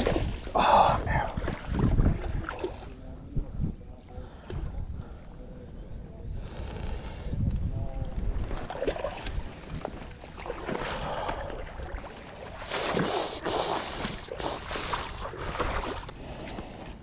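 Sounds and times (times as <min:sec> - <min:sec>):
shallow water splashing: 0:00.0 - 0:03.2, 0:08.2 - 0:17.0
wind rumble on microphone: 0:00.0 - 0:13.3.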